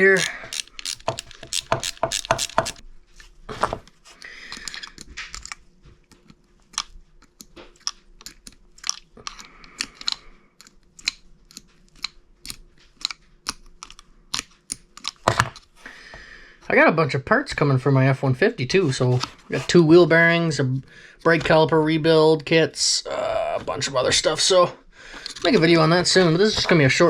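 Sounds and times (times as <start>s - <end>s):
small parts clicking and tapping: 0.0s - 2.8s, 4.2s - 15.7s
faint steady hum: 0.0s - 27.0s.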